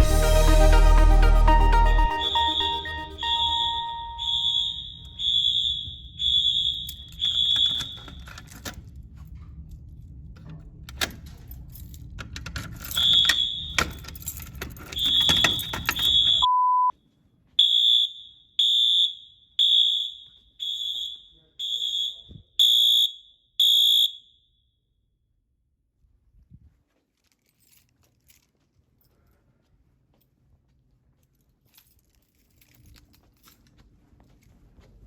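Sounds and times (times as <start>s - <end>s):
short low beep: 0.0s - 6.8s, 15.0s - 16.9s
fire alarm horn pulses: 0.0s - 8.3s, 13.0s - 14.0s, 14.9s - 16.5s, 17.6s - 24.3s
clicks and handling noise: 6.8s - 16.5s.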